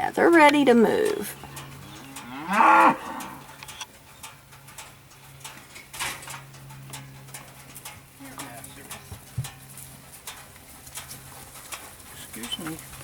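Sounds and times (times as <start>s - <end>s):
faint clicks: 3.1s - 9.6s.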